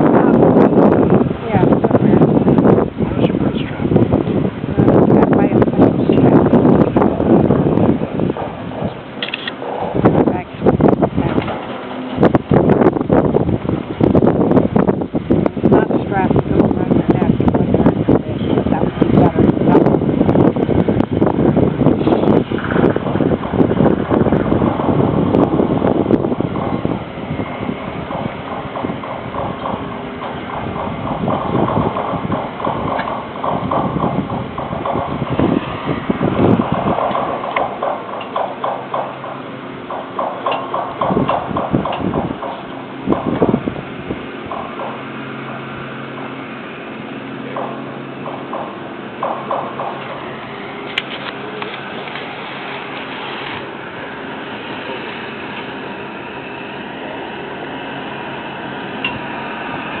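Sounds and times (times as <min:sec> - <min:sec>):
steady mechanical rumble: 0:00.0 - 1:00.0
sharp click: 0:09.2 - 0:09.6
carriage clunking on rails: 0:11.2 - 0:12.6, 0:22.0 - 0:35.5, 0:36.4 - 0:43.5.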